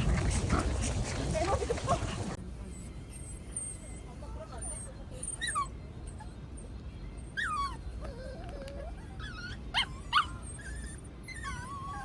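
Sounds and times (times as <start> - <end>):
dog whining: 7.3 - 12.0
dog yipping: 7.3 - 12.0.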